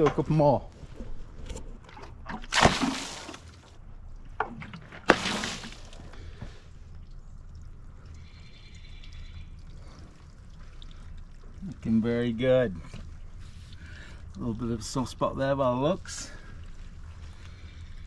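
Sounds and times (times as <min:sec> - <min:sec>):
water splashing onto wood: 0:02.1 - 0:03.8, 0:04.4 - 0:08.0.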